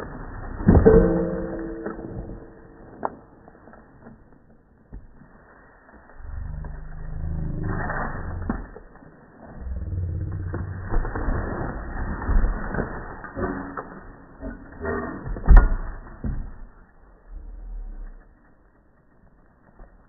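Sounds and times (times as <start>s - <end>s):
low creaking: 6.1s - 14.3s.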